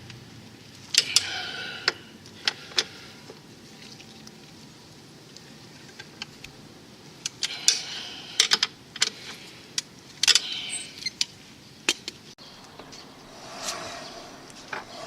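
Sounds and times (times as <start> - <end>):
short metal scrapes: 13.3 - 15.0.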